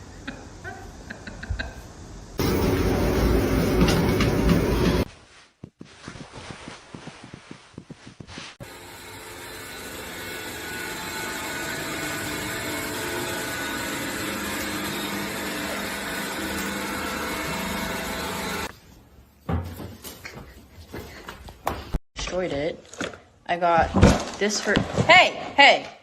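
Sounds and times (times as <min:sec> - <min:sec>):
appliance motor whirring: 0:02.4 - 0:05.1, 0:08.6 - 0:18.7.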